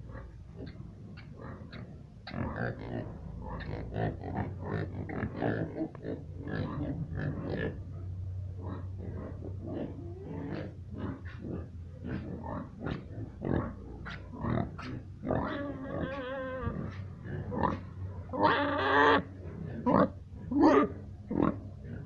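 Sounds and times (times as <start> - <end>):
pigs grunting: 0.0 - 22.0
pig squealing: 12.4 - 21.6.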